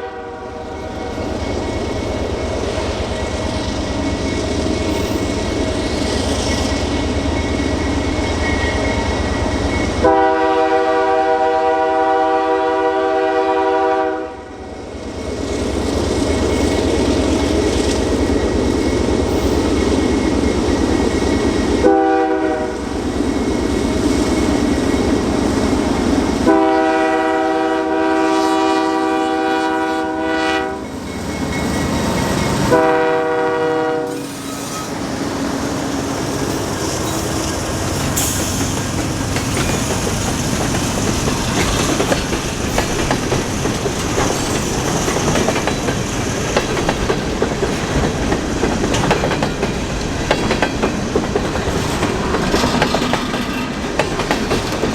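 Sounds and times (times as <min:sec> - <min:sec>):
locomotive air horn blasts: 0:00.0 - 0:00.6, 0:10.0 - 0:14.5, 0:21.8 - 0:22.8, 0:26.4 - 0:30.8, 0:32.7 - 0:35.8
locomotive rumble: 0:29.0 - 0:54.9
wheels clicking over rail joints: 0:37.9 - 0:54.9.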